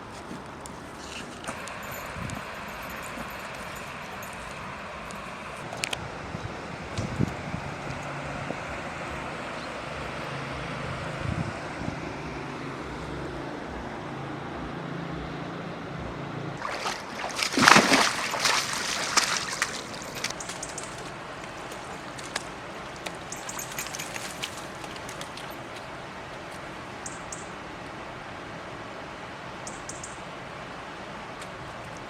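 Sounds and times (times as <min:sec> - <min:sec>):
water splashing and sloshing: 0:00.0 - 0:06.0, 0:16.6 - 0:28.5
small water drips: 0:16.6 - 0:27.6.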